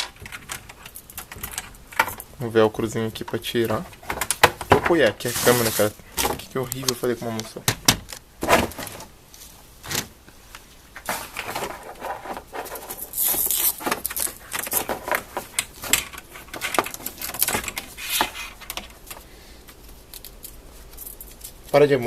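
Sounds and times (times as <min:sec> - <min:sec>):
packaging rustling and clicking: 0:11.0 - 0:21.8
velcro strap ripping open: 0:13.1 - 0:13.8.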